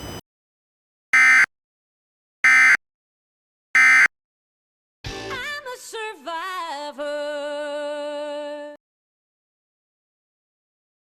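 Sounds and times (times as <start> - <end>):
buzzy digital data tones: 1.2 - 1.5, 3.8 - 4.1
music with singing voice: 5.1 - 8.8.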